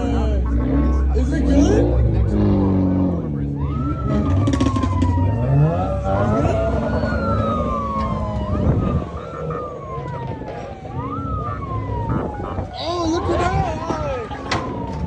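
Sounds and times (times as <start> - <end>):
emergency vehicle siren wailing: 0.0 - 15.0
vehicle engines rumbling: 0.0 - 15.0.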